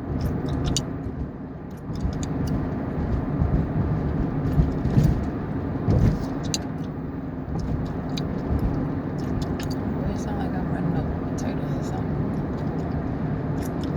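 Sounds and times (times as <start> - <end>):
car cabin rumble: 0.0 - 13.9
gum chewing smacks and clicks: 0.2 - 0.8, 7.9 - 9.8, 13.6 - 13.9.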